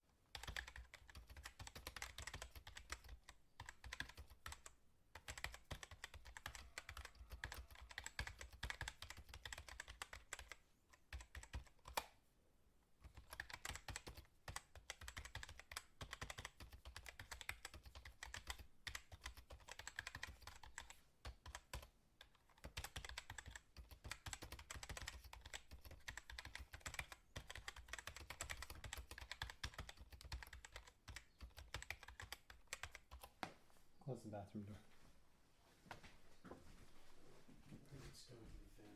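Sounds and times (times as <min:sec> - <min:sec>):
keyboard typing: 0:00.3 - 0:12.1, 0:13.0 - 0:33.5.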